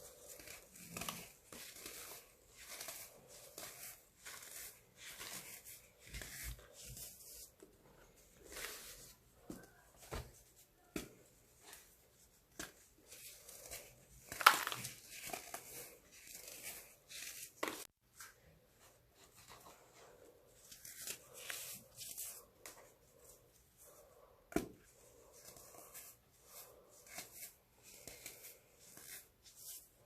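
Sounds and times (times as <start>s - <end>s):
baking soda crunching: 13.4s - 17.1s.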